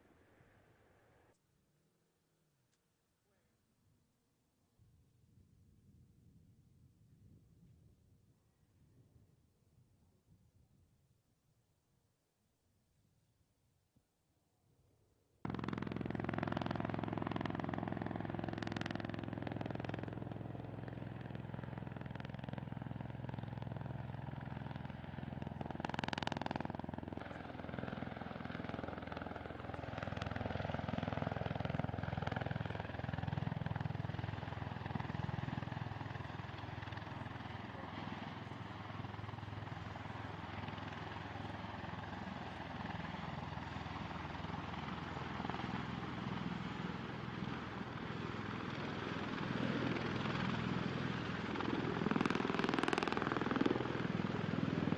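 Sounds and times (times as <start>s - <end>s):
aircraft engines and rotors droning: 15.4s - 54.9s.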